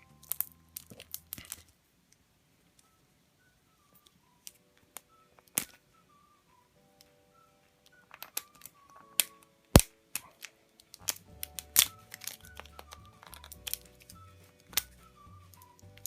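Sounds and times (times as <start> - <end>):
light background music: 0.0 - 16.0
egg cracking open: 8.1 - 15.0
packaging crackling: 8.1 - 15.0.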